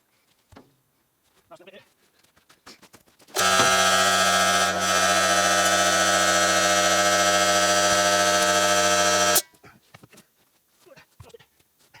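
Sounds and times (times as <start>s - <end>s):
machine motor humming: 3.4s - 9.4s.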